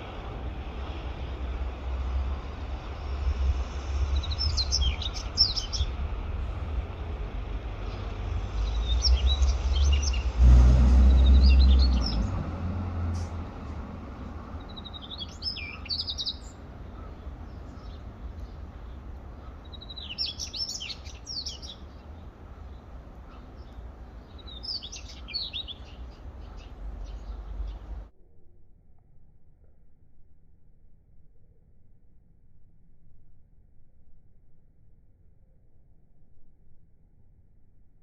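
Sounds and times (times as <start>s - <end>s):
low rumble: 0.0s - 25.2s
bird singing high chirps and trills: 2.5s - 6.2s, 7.0s - 13.6s, 14.4s - 28.1s.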